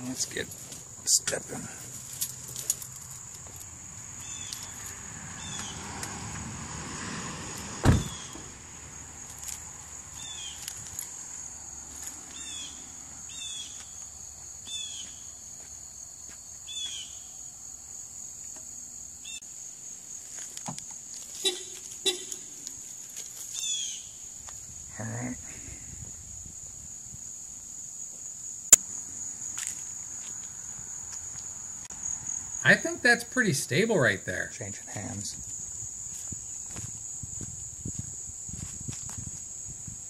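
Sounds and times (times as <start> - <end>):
insect chorus buzzing: 0.0 - 40.0
sharp thump: 7.8 - 8.5.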